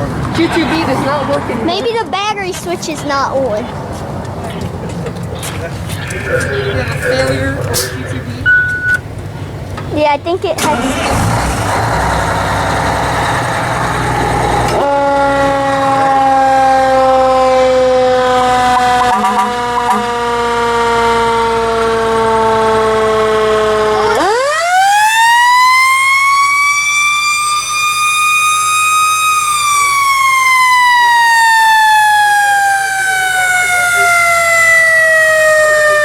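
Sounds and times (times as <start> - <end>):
fire truck siren: 10.7 - 36.0.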